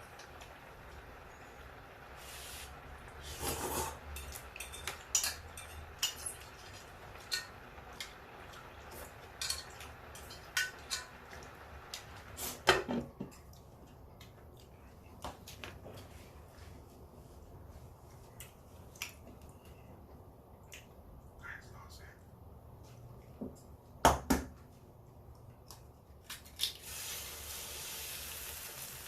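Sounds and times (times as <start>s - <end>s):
cutlery clinking on plates: 3.4s - 8.2s.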